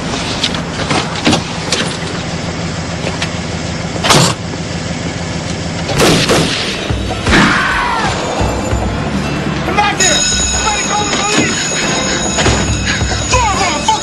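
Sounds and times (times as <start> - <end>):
car engine idling: 0.0 - 14.0
loud bangs: 5.9 - 13.4.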